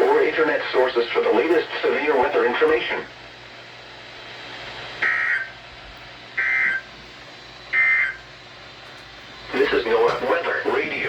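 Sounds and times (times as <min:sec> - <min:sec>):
faint radio hiss: 0:00.0 - 0:03.1.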